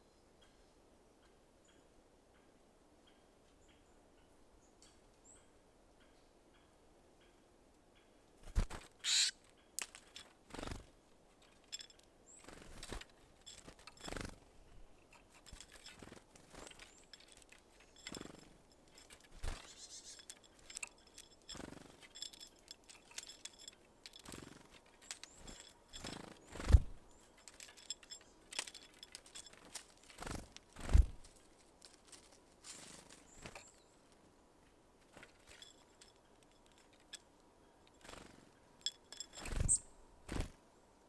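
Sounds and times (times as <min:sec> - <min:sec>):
birds tapping and pecking: 0:08.4 - 0:34.2, 0:35.0 - 0:40.6.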